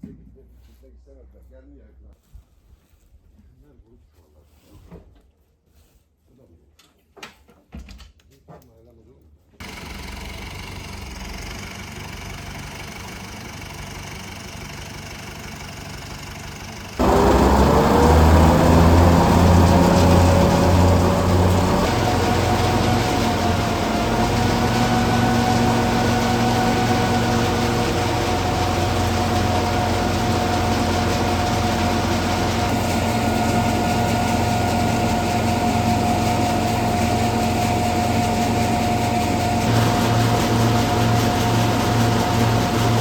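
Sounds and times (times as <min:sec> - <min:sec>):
mechanical whine: 0:17.0 - 0:43.0
threshing machine drone: 0:17.0 - 0:43.0.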